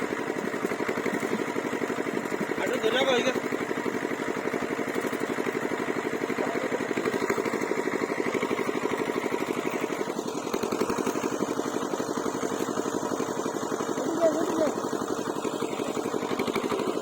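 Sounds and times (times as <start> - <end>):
small engine chugging: 0.0 - 17.0.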